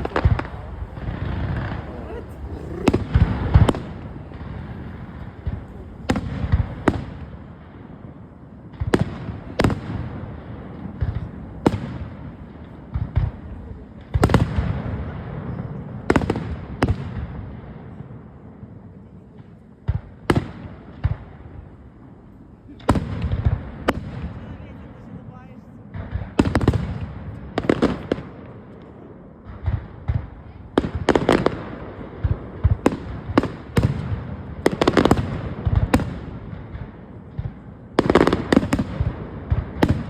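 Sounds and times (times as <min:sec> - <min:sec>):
fireworks bangs with rumbling echo: 0:00.0 - 0:40.0.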